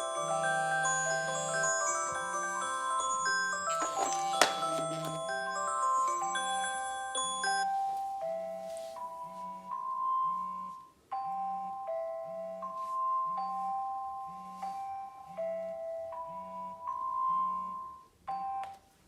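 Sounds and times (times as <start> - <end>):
marimba-like alarm melody: 0.0 - 3.2.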